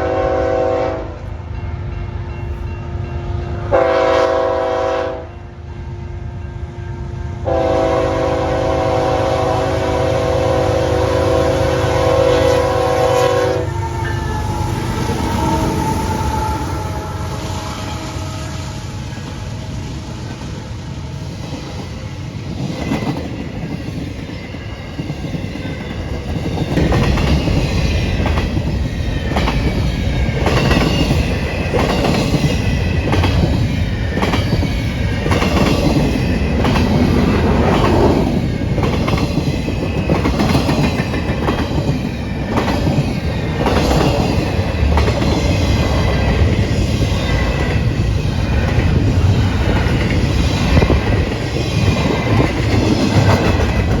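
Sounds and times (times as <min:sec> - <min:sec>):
train wheels clacking on rails: 0:11.0 - 0:54.0
high wheel squeal: 0:13.3 - 0:19.5.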